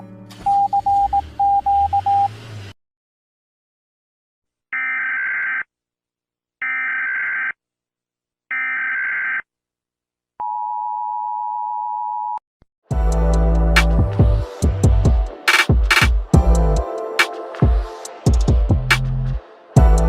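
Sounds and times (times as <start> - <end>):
loud music with drums: 12.9 - 19.2, 19.8 - 20.0.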